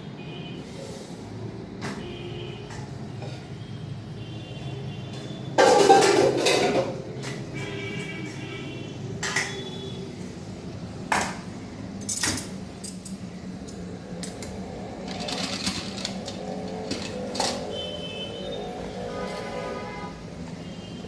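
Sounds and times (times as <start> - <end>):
metal utensils scraping pots: 5.6 - 7.7, 14.2 - 19.8.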